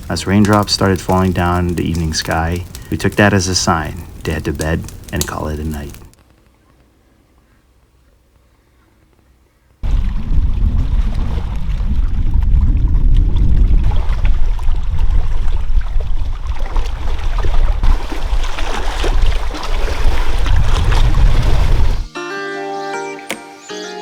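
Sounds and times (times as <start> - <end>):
rain falling: 0.0 - 6.4
patter of drops: 0.1 - 6.5
wind rumbling on microphone: 9.8 - 22.1.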